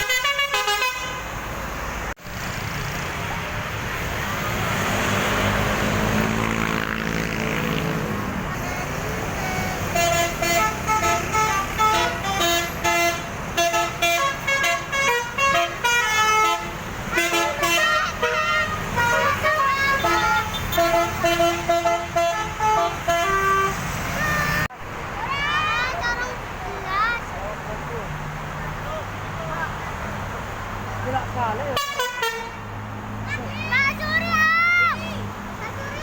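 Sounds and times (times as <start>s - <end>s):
multi-trumpet bus horn tune: 0.0s - 1.4s, 8.6s - 24.7s, 31.8s - 32.7s
road noise: 0.0s - 36.0s
passing vehicle engine: 1.1s - 36.0s.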